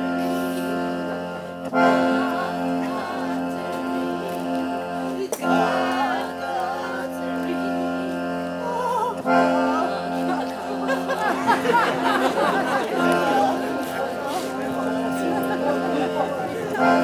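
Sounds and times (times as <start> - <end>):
held accompanying notes: 0.0 - 17.0
wavering sung melody: 5.5 - 17.0.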